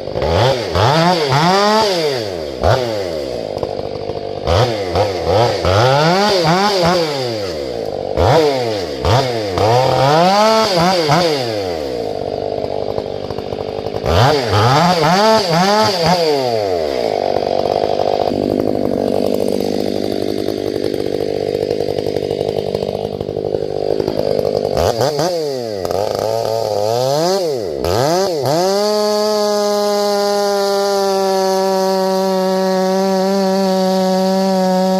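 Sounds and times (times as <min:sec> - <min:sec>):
chainsaw revving and cutting wood: 0:00.0 - 0:34.9.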